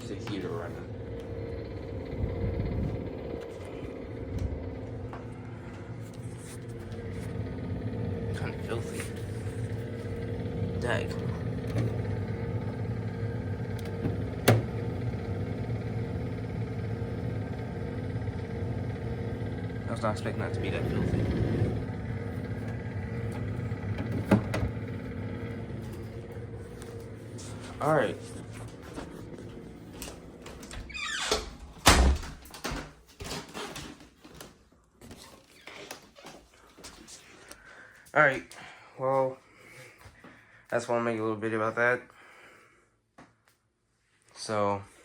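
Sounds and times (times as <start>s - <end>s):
electric hum of heater: 0.0s - 32.8s.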